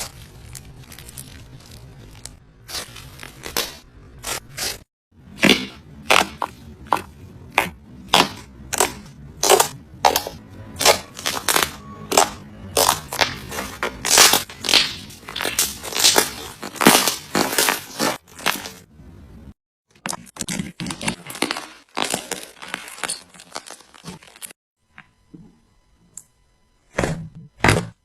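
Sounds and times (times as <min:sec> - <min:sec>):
slime crackling when squeezed: 0:00.0 - 0:03.8.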